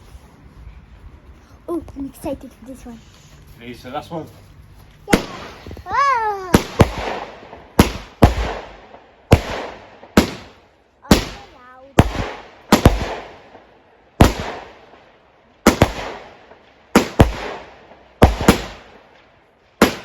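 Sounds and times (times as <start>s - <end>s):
fireworks bangs: 5.1s - 20.0s.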